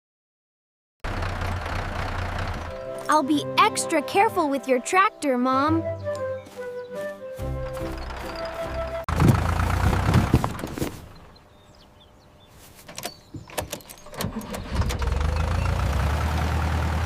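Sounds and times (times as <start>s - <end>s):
tractor engine running: 1.0s - 5.2s, 7.4s - 11.8s, 13.3s - 17.0s.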